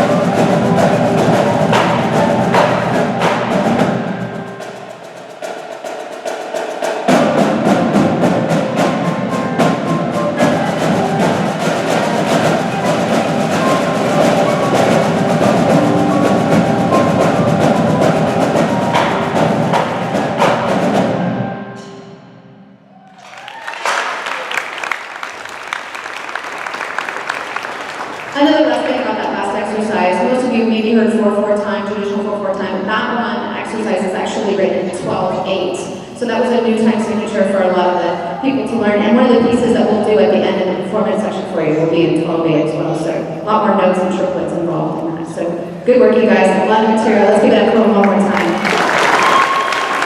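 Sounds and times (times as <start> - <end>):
drums and mallet percussion playing: 0.0 - 21.9
audience applause: 23.1 - 29.1, 48.3 - 50.0.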